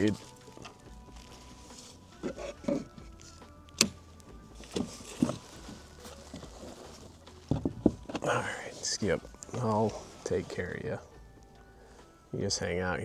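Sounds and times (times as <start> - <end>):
knocks and taps on a kayak: 7.5 - 8.3.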